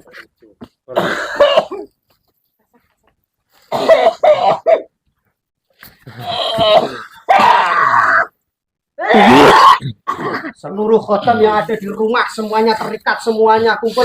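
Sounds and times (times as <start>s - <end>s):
person coughing hard: 0.9s - 1.9s, 3.7s - 4.9s, 6.2s - 7.8s, 9.1s - 10.6s.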